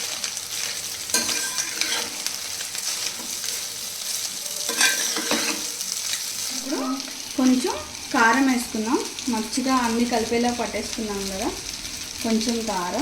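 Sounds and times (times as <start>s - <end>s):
noodles sizzling in hot oil: 0.0s - 13.0s
spatula scraping a pot: 1.1s - 3.6s, 4.7s - 5.7s.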